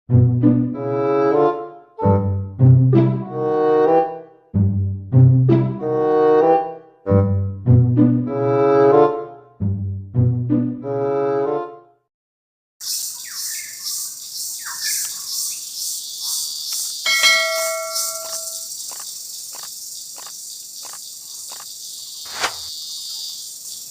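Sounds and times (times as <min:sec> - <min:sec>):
crickets chirping: 0:12.8 - 0:23.9
short bell-like ring: 0:17.1 - 0:18.7.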